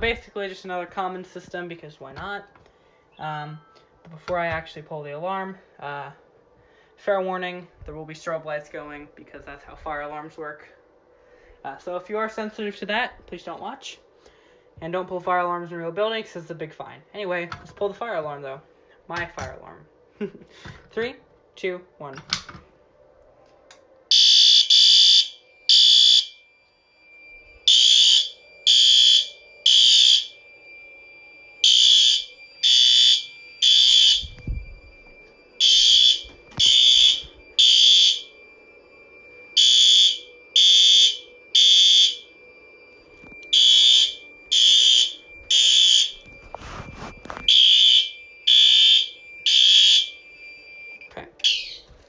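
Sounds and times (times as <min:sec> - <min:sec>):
fire alarm horn blasts: 0:24.1 - 0:52.0.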